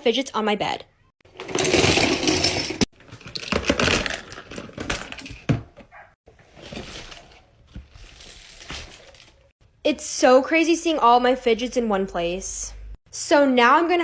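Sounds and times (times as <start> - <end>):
plastic toys clattering: 1.3 - 9.5.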